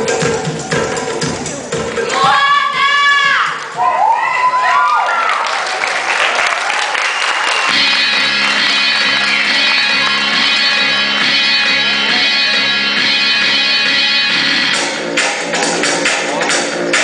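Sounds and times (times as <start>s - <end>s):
audience applauding: 4.0s - 11.1s
music with held chords: 7.7s - 17.0s.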